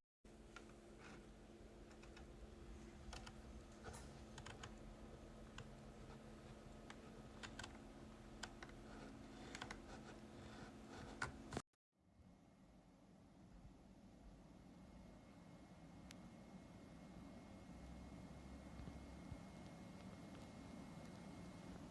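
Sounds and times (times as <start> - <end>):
steady low hum: 0.3 - 21.9
faint irregular clicking: 8.4 - 9.9, 18.7 - 21.8.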